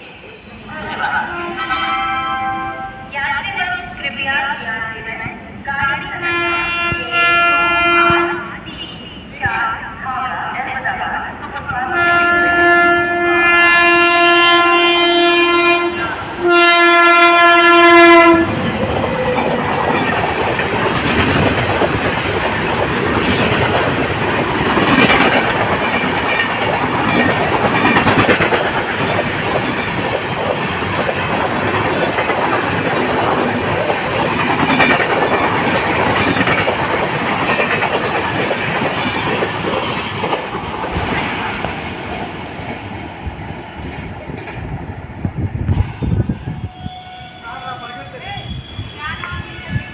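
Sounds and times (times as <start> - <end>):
train rushing past: 0.0 - 49.9
locomotive horn blasts: 0.7 - 3.1, 6.2 - 8.5, 11.9 - 18.7.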